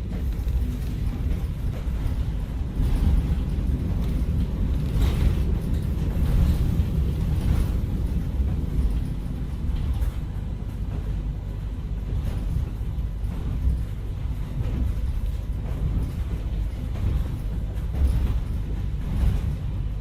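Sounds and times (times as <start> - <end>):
low rumbling drone: 0.0 - 20.0.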